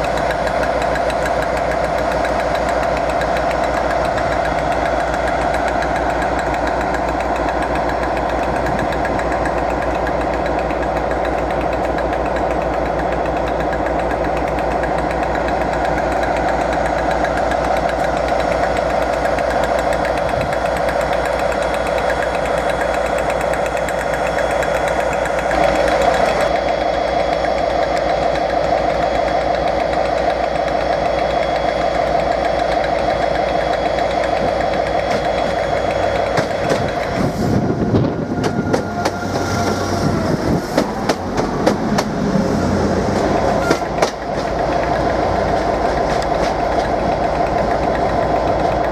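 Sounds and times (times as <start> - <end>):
diesel locomotive engine idling: 0.0 - 48.9.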